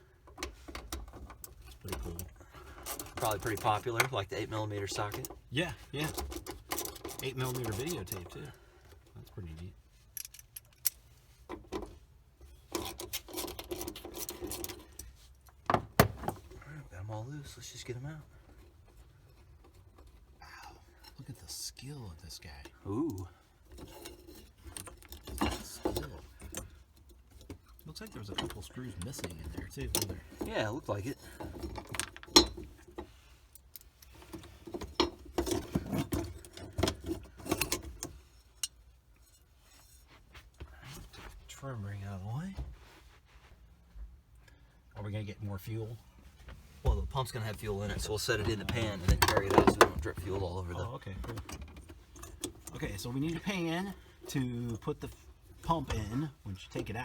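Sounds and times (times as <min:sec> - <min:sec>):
small metal screws clinking: 0:10.0 - 0:11.1.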